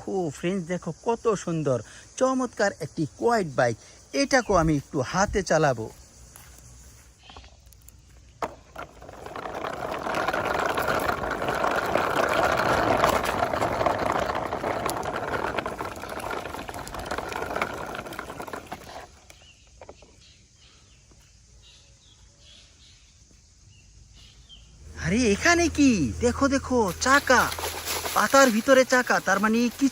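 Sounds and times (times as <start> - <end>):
toy wheels rolling with crackling: 7.3 - 20.1, 25.0 - 29.9.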